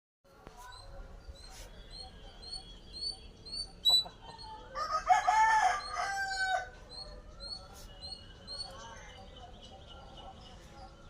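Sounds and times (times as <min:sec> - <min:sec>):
rooster crowing: 0:04.5 - 0:06.8.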